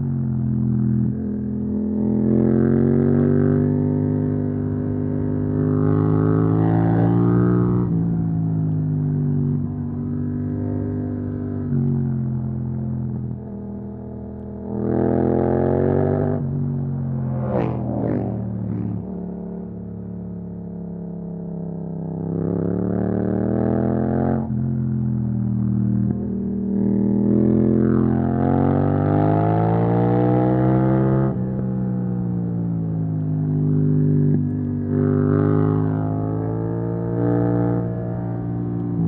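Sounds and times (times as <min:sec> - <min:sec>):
motorcycle engine accelerating: 0:00.3 - 0:39.0.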